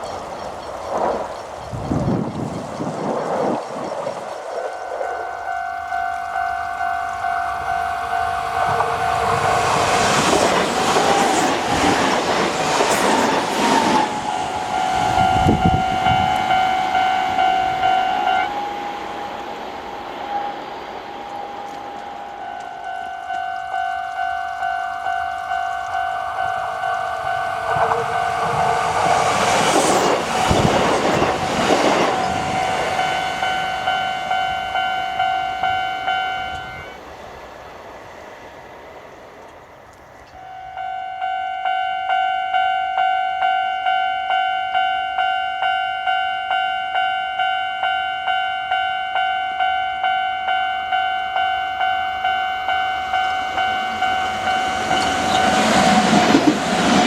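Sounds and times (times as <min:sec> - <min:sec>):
train rushing past: 0:00.0 - 0:41.8, 0:49.6 - 0:57.0
level crossing bell ringing: 0:04.6 - 0:10.4, 0:14.0 - 0:19.1, 0:21.3 - 0:30.2, 0:31.9 - 0:37.0, 0:40.4 - 0:56.2.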